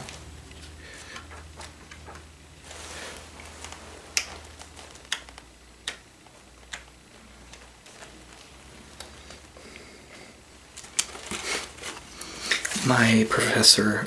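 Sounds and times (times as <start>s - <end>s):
book page rustle: 0.0s - 5.5s, 6.2s - 9.6s, 10.7s - 13.2s.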